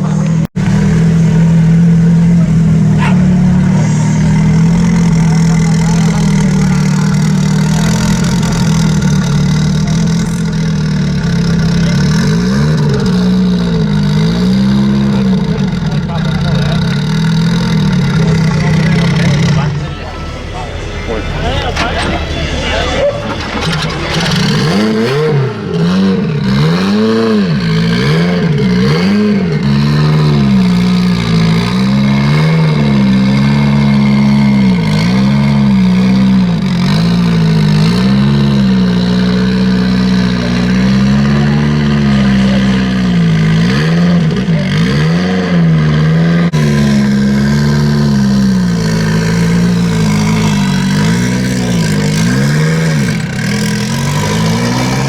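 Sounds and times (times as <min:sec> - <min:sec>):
car engine revving: 0:00.0 - 0:55.0.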